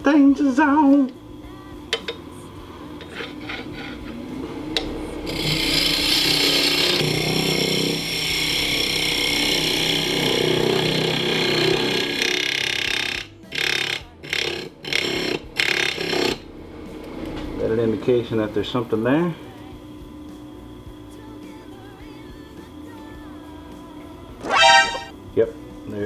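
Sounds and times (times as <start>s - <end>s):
power tool cutting wood: 5.2s - 16.4s, 24.4s - 25.1s.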